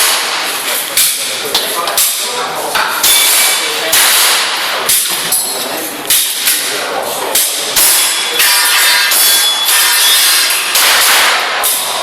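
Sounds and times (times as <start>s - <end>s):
airsoft pistol shots: 0.0s - 0.5s, 10.7s - 11.8s
metallic ringing: 7.4s - 11.1s.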